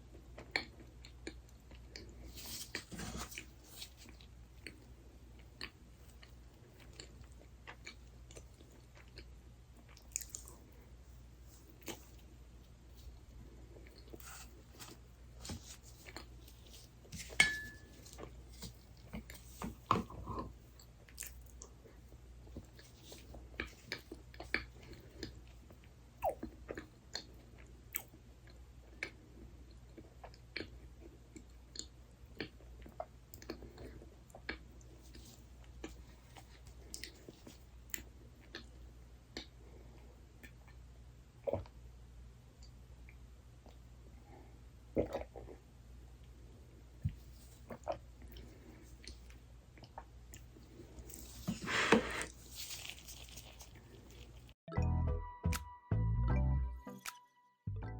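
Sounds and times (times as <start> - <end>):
close chewing and biting: 4.1 - 10.8, 52.2 - 54.6.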